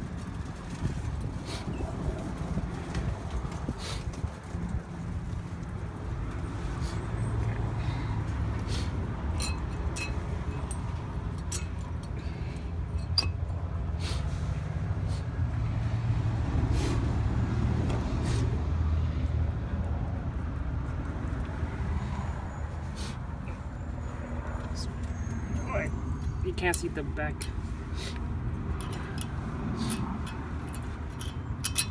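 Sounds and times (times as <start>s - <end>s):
brake parts clicking and tapping: 8.2s - 14.0s, 26.1s - 31.9s.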